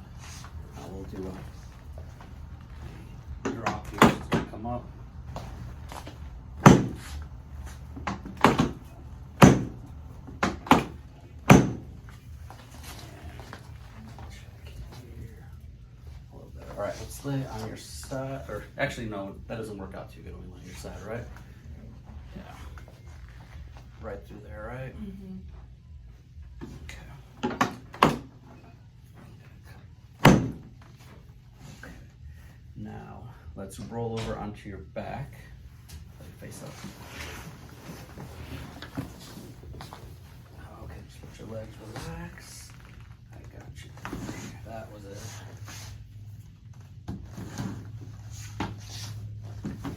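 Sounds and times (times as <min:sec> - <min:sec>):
treatment table snapping down: 0:06.6 - 0:07.0, 0:09.4 - 0:09.8, 0:10.4 - 0:11.9.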